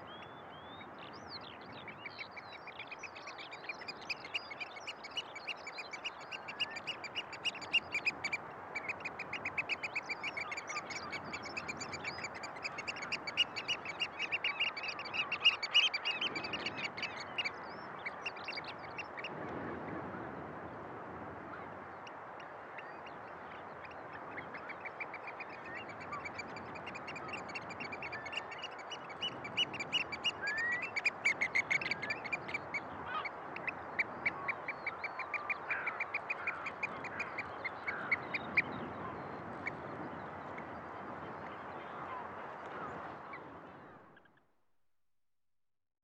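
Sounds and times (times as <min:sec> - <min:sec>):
bird piping calls: 0:02.8 - 0:17.5.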